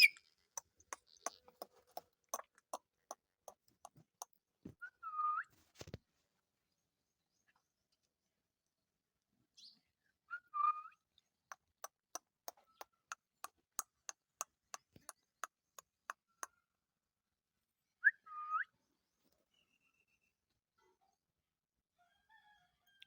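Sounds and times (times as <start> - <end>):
parrot whistled calls: 0.0 - 0.2.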